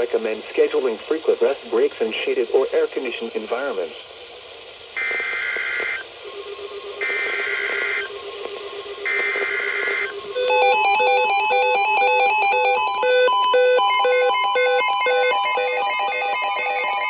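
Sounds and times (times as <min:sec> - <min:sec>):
shrill digital data bursts: 0:05.0 - 0:17.0
rapid electronic alert tone: 0:06.2 - 0:17.0.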